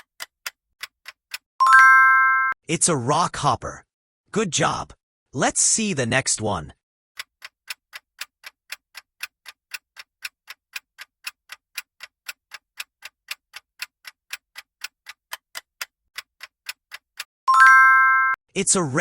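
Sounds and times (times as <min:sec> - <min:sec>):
clock ticking: 0:00.0 - 0:02.0, 0:07.2 - 0:18.1.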